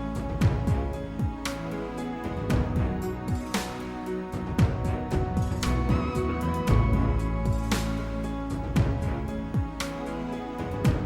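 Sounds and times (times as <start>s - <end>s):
background music with beat: 0.0s - 11.0s
low bass hits: 4.4s - 9.8s.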